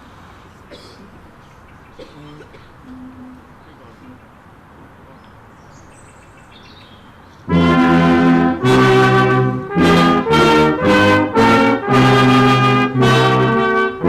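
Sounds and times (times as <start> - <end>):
brass ensemble playing chords: 7.5 - 14.0.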